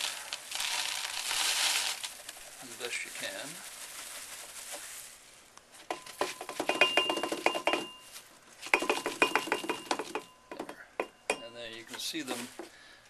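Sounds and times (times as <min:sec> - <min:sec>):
eggshell chips rattling into pipe: 0:00.0 - 0:03.1
metal pipe ringing: 0:09.3 - 0:11.7.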